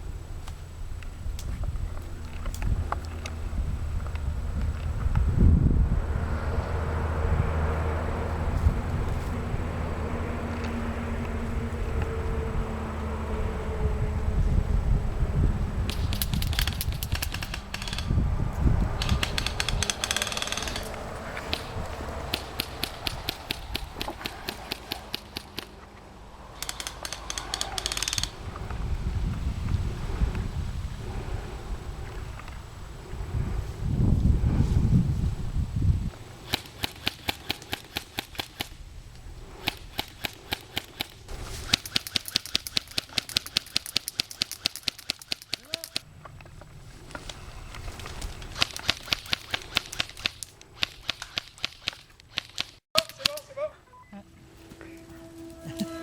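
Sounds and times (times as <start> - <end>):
wind rumbling on microphone: 0.0 - 44.0, 46.0 - 51.2
airsoft guns firing bursts: 15.9 - 18.1, 19.0 - 25.7, 26.6 - 28.3, 36.4 - 38.7, 39.6 - 46.0.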